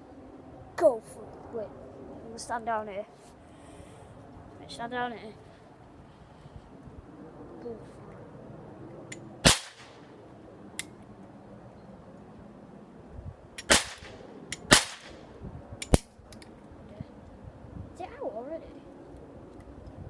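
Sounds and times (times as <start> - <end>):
cap gun cracks: 9.1 - 10.0, 13.6 - 15.2, 15.8 - 16.5.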